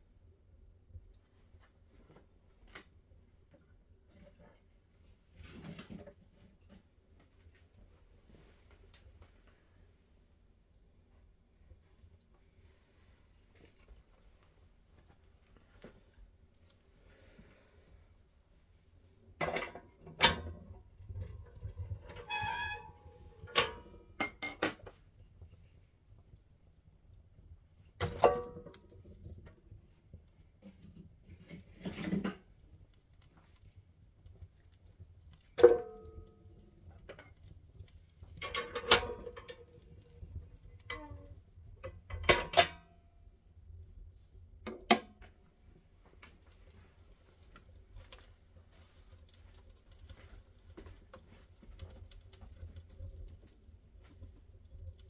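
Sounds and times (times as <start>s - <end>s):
wood fire crackling: 12.5s - 19.5s, 20.3s - 24.2s, 24.8s - 44.6s, 45.6s - 55.0s.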